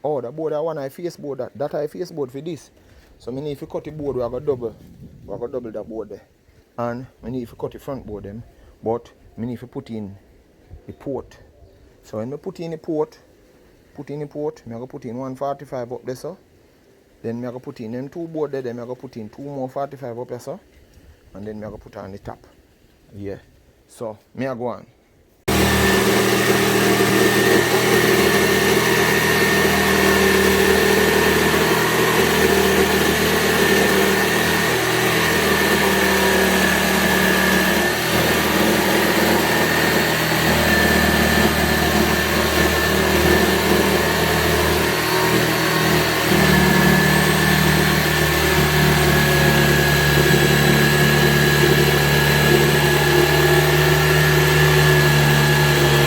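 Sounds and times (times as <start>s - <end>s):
power tool motor whining: 25.5s - 56.0s.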